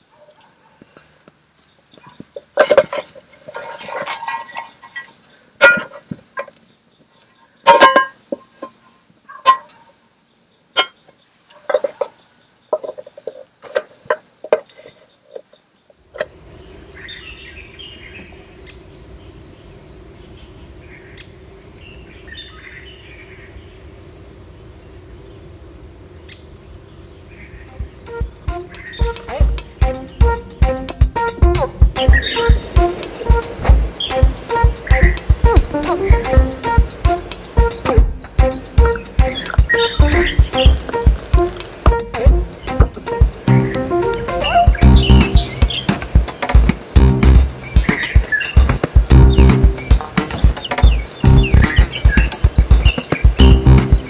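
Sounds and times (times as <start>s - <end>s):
insects trilling: 0.0s - 54.0s
sharp knocks and clacks: 44.7s - 54.0s.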